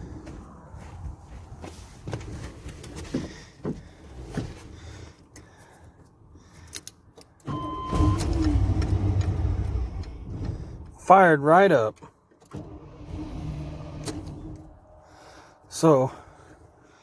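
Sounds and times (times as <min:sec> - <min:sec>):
truck engine cranking and firing up: 0:07.4 - 0:11.2, 0:12.4 - 0:15.4.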